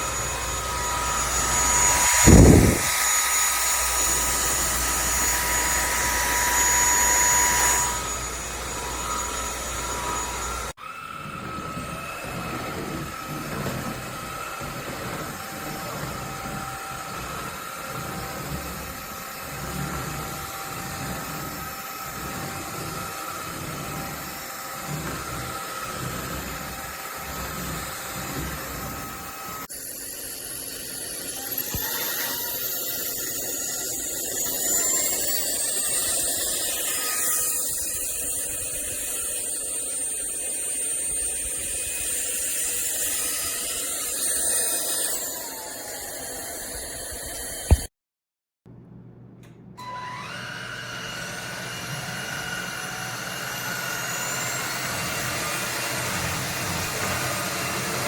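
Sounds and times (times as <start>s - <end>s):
vacuum cleaner motor whine: 0.0s - 47.9s, 49.8s - 58.0s.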